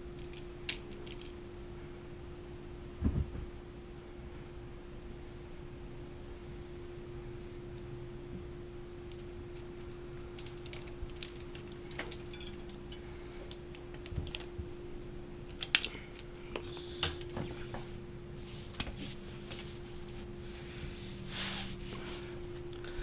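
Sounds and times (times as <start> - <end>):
low steady hum: 0.0 - 23.0
metal parts and tools clicking: 10.4 - 14.5.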